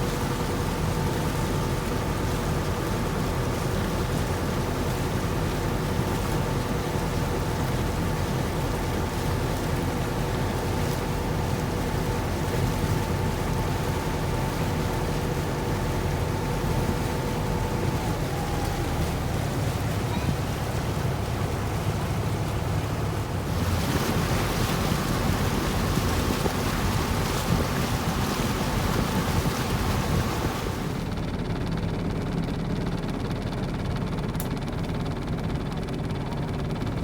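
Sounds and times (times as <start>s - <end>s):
boat engine rumble and whine: 0.0s - 37.0s
wind: 0.0s - 37.0s
water hiss: 23.4s - 31.0s.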